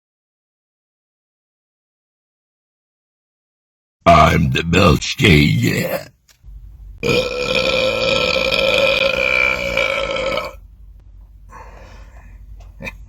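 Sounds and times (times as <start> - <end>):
man belching: 7.0 - 10.6.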